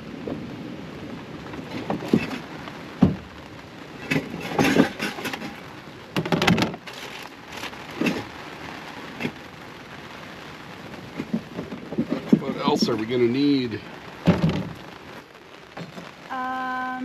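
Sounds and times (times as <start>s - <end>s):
steady rain hiss: 0.0s - 17.0s
irregular knocks and clattering: 1.5s - 3.3s, 4.0s - 5.6s, 6.2s - 8.3s, 11.1s - 13.1s, 14.2s - 14.8s, 15.8s - 16.2s.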